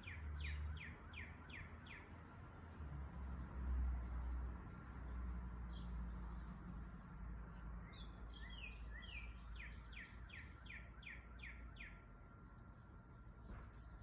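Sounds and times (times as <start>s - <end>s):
bird whistling song: 7.9s - 12.0s.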